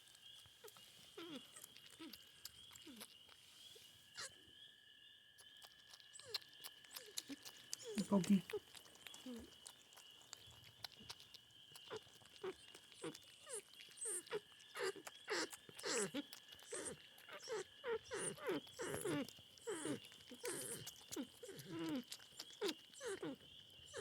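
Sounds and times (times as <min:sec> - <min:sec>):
porcupine whining calls: 0:00.6 - 0:04.4, 0:11.8 - 0:24.0.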